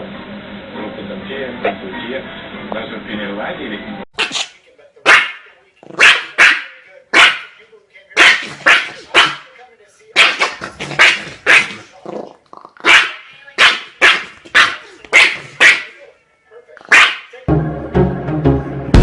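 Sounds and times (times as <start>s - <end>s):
dog barking: 5.1s - 7.6s, 8.2s - 9.5s, 10.2s - 11.9s, 12.8s - 16.0s, 16.8s - 17.4s
music: 17.5s - 19.0s.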